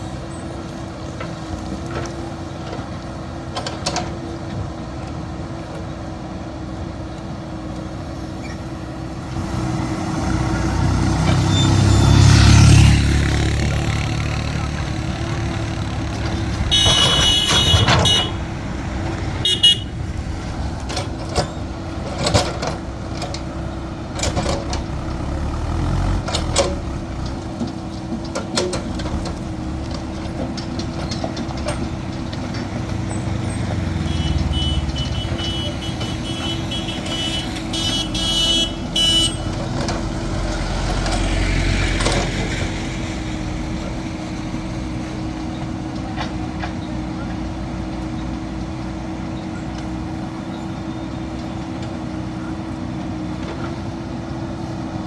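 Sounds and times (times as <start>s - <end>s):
diesel engine running: 0.0s - 55.0s
vehicle horns honking: 14.0s - 20.2s, 33.7s - 39.7s.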